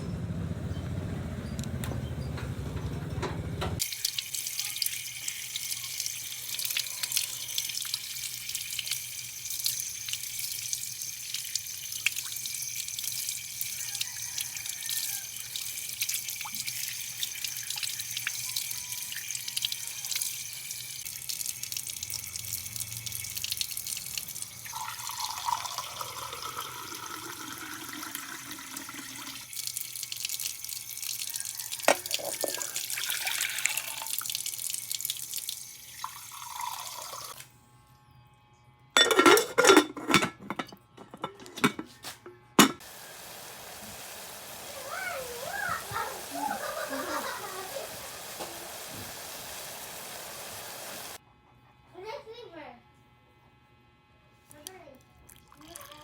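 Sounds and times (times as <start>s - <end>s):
water dripping: 3.8s - 37.4s, 42.8s - 51.2s
water running into a sink: 3.8s - 37.4s, 42.6s - 51.2s.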